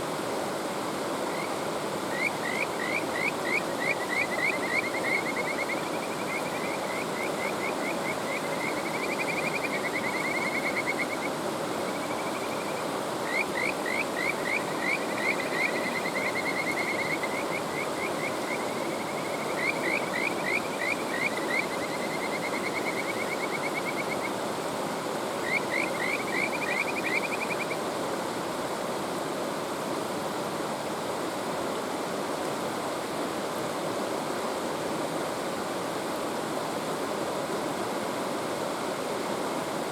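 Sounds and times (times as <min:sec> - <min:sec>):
mountain stream rushing: 0:00.0 - 0:39.9
frogs calling with whistled trills: 0:01.2 - 0:24.4, 0:25.4 - 0:27.9.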